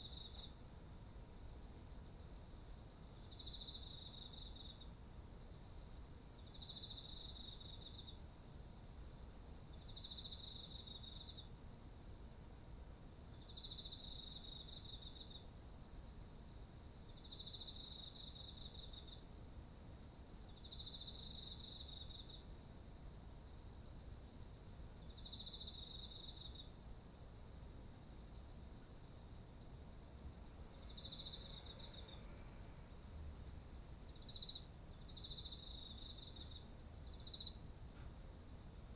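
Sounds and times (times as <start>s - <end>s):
continuous high cricket trill: 0.0s - 38.9s
pulsed cricket trills: 23.5s - 38.9s.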